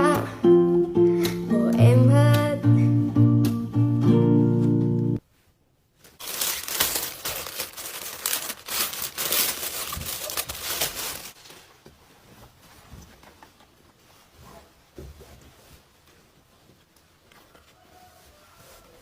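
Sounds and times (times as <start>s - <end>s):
plastic packaging crinkling: 6.0s - 11.8s.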